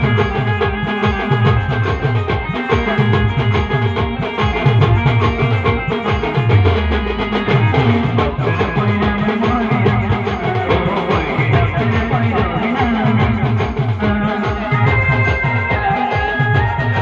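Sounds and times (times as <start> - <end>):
instrumental band music: 0.0 - 17.0.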